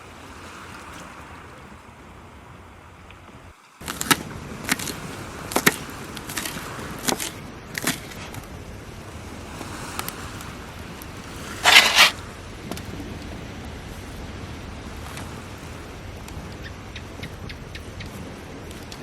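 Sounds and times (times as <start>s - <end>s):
steady rushing noise: 4.0s - 19.0s
rough rustle or scrape: 11.5s - 12.2s.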